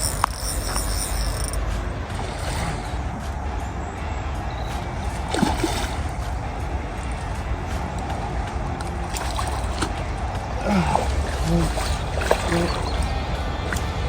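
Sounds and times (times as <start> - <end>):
water splashing and sloshing: 0.0 - 14.0
sharp splash: 5.0 - 6.4, 8.8 - 10.0, 10.6 - 14.0.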